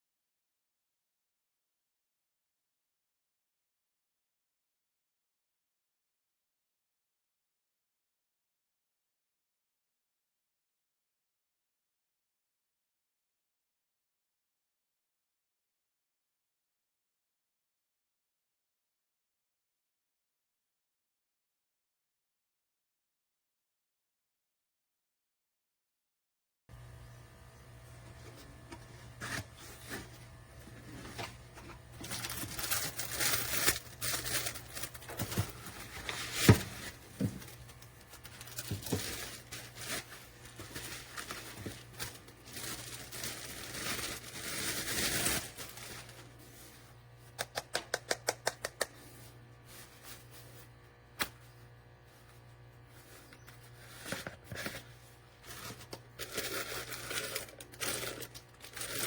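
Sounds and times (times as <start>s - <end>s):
rustling and crinkling: 27.9s - 47.7s, 48.6s - 59.0s.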